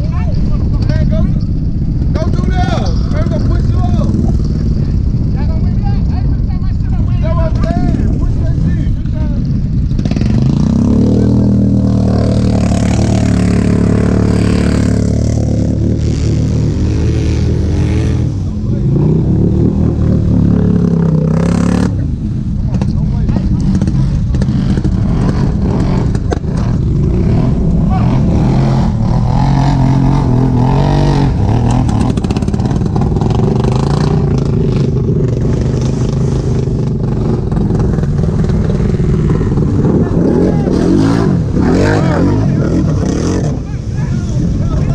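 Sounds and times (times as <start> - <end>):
rushing noise: 0.0 - 44.9
atv engine at high revs: 9.9 - 43.8.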